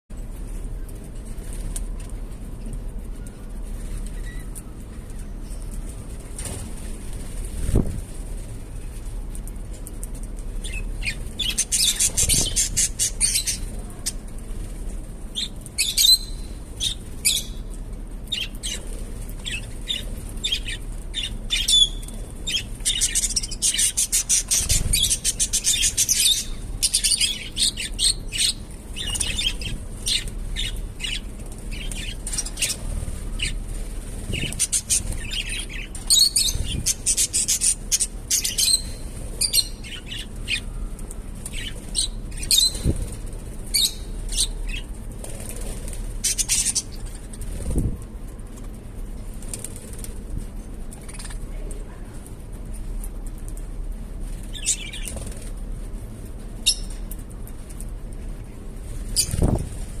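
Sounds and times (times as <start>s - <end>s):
parakeets chirping and squawking: 10.6s - 14.2s, 15.4s - 17.6s, 18.3s - 40.7s, 41.5s - 44.9s, 45.7s - 47.6s, 51.0s - 51.4s, 54.5s - 55.5s, 59.1s - 59.6s.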